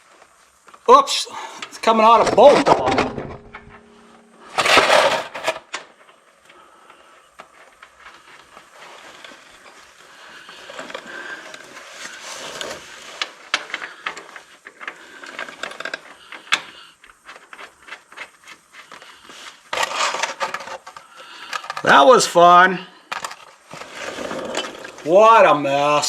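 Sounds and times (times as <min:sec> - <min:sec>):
rustling: 0:00.0 - 0:22.3, 0:22.9 - 0:26.0
sharp clicks and knocks: 0:01.6 - 0:05.9.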